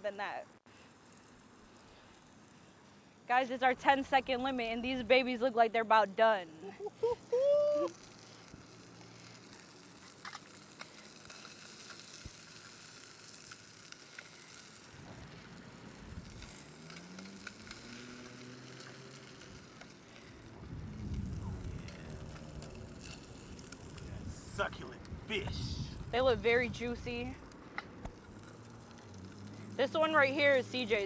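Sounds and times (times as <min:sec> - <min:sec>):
fish frying in butter: 0:07.5 - 0:24.6, 0:28.1 - 0:31.0.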